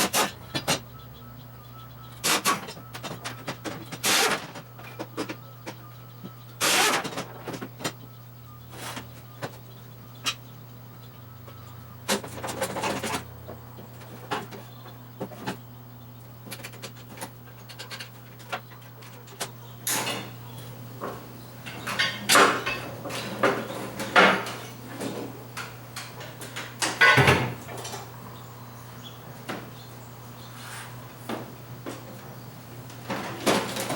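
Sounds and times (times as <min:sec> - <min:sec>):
steady low hum: 0:00.0 - 0:33.9
knocks and clattering: 0:21.0 - 0:28.2, 0:32.9 - 0:33.9.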